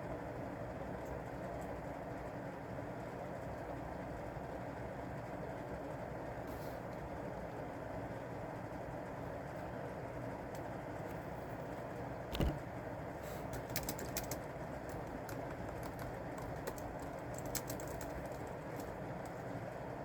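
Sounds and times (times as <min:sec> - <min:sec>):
computer keyboard typing: 0:13.5 - 0:19.5.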